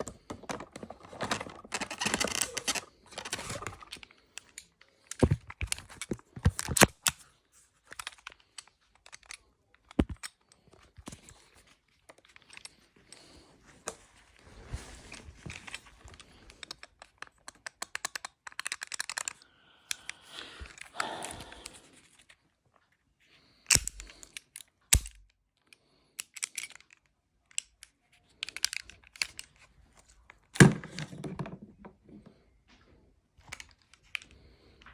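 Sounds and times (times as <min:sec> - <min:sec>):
plastic packaging rustling: 0:00.0 - 0:04.1.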